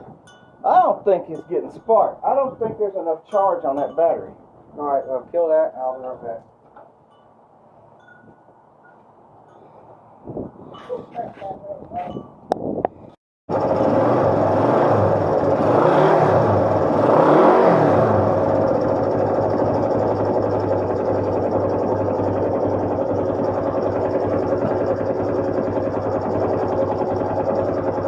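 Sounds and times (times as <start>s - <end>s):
motorcycle engine revving and idling: 13.5s - 28.0s.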